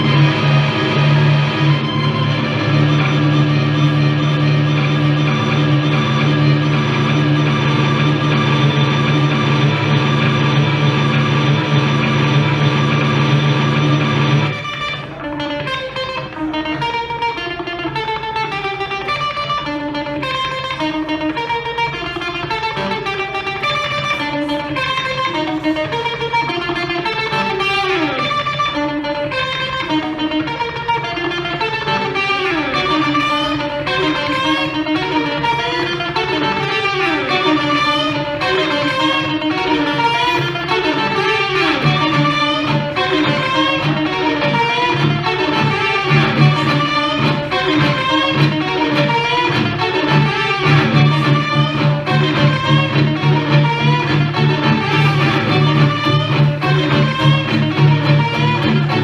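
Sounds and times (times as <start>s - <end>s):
plucked strings playing quick notes: 0.0s - 59.0s.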